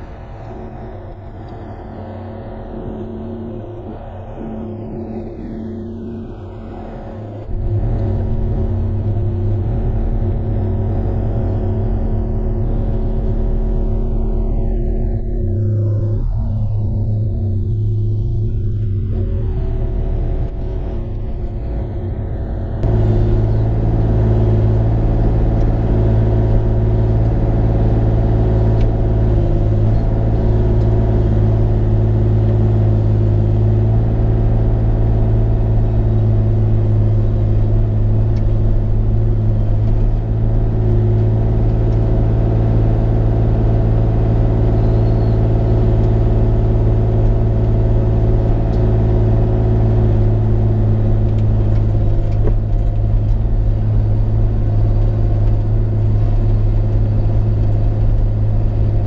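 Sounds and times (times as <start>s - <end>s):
excavator diesel engine running: 0.0s - 59.0s.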